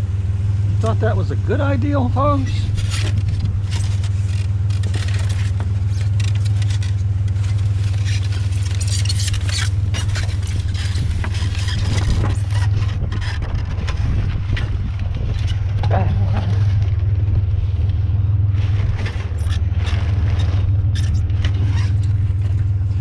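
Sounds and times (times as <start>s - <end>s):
truck engine droning: 0.0s - 23.0s
rattles and clicks: 2.2s - 23.0s.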